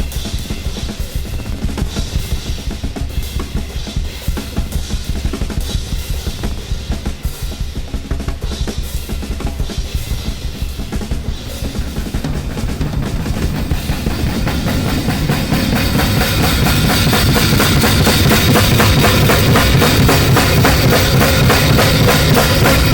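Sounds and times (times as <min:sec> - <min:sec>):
fast busy drumming: 0:00.0 - 0:22.9
steady deep bass: 0:11.5 - 0:22.9.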